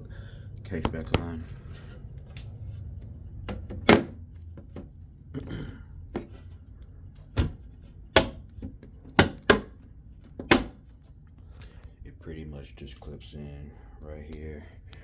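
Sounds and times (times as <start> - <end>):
case cover knocking and clicking: 7.4 - 9.8, 10.4 - 10.8.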